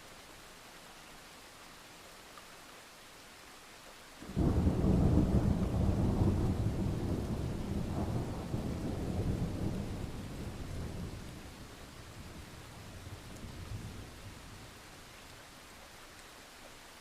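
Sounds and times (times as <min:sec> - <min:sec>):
steady rain: 0:00.0 - 0:17.0
thunder rumbling: 0:04.2 - 0:14.7.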